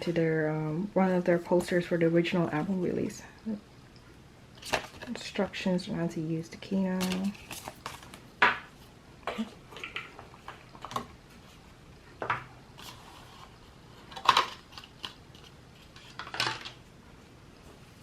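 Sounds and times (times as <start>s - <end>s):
packaging and cards rustling: 4.6s - 5.2s, 6.8s - 8.6s, 12.8s - 16.8s.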